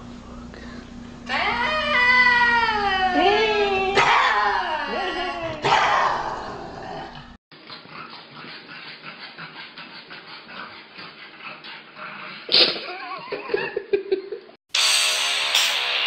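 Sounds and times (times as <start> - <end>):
dog vocalizing: 7.0 - 13.3.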